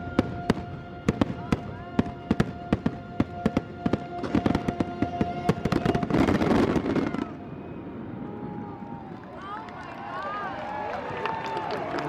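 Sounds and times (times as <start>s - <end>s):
music soundtrack: 0.0s - 6.5s
fireworks bursting: 0.0s - 8.2s
fireworks crackle: 0.0s - 8.6s.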